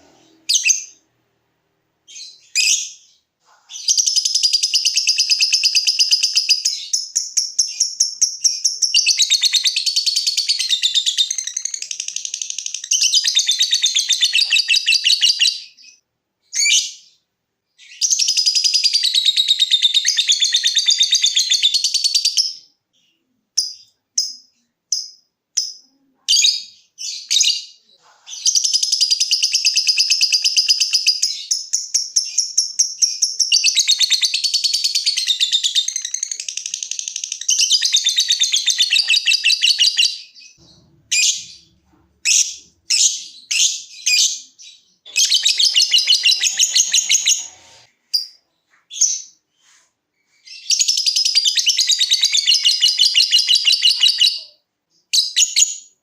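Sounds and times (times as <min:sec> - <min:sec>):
lovebird chattering: 0:41.0 - 0:48.3
lovebird short chirps: 0:42.2 - 0:54.4.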